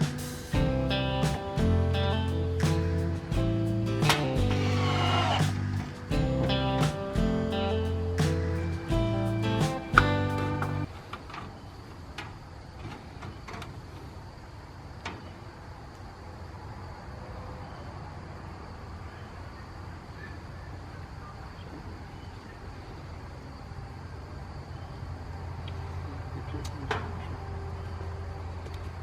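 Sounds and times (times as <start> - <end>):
steady low hum: 0.0 - 10.9
strummed guitar music: 0.0 - 10.9.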